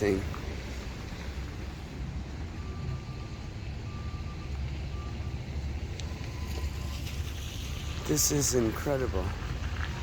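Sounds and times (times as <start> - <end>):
reversing alarm beeping: 2.3 - 7.2.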